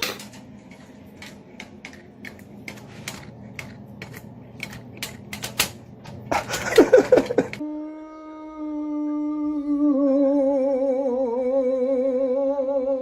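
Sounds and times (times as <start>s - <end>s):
wavering pitched cries: 7.6s - 13.0s.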